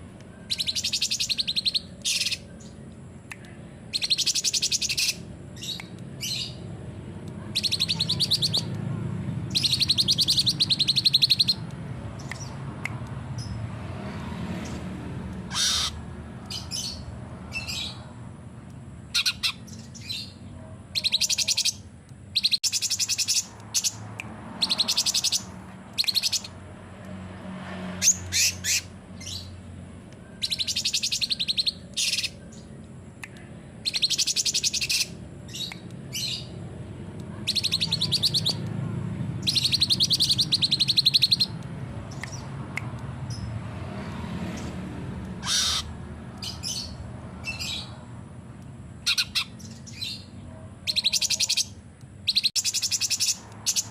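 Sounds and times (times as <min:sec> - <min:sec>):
bird singing fast high trills: 0:09.5 - 0:11.6.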